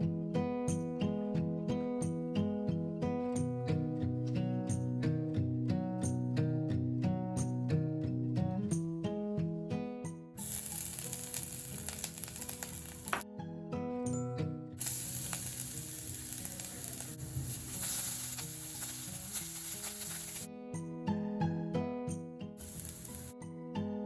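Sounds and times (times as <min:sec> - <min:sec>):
plucked acoustic guitar music: 0:00.0 - 0:14.8, 0:17.2 - 0:24.0
food sizzling in oil: 0:10.4 - 0:13.2, 0:14.8 - 0:20.5, 0:22.6 - 0:23.3.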